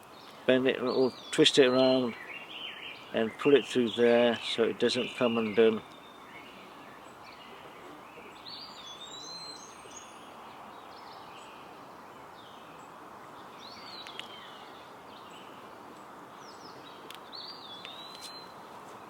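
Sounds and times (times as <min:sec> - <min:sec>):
background hiss: 0:00.0 - 0:19.0
birds chirping: 0:00.0 - 0:19.0
small click: 0:14.0 - 0:14.4.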